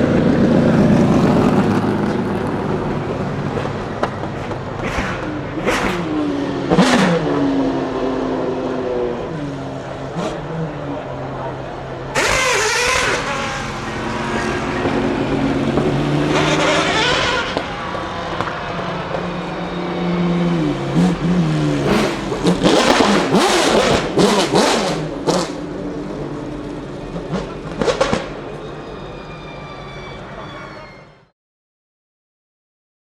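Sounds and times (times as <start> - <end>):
car engine idling and revving: 0.0 - 28.7
exhaust crackles and pops: 12.2 - 19.6, 20.8 - 28.4.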